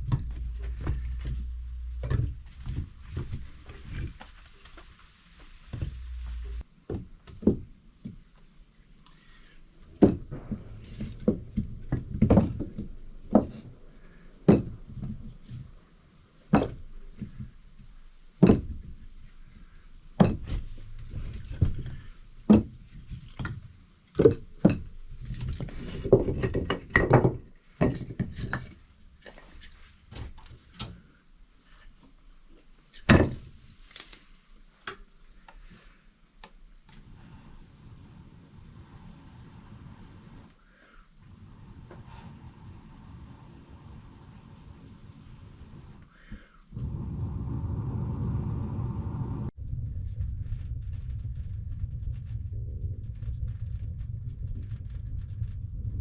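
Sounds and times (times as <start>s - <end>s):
steady low rumble: 0.0s - 4.2s, 5.6s - 6.7s, 9.7s - 18.1s, 46.7s - 56.0s
sharp knocks and bangs: 10.0s - 13.7s.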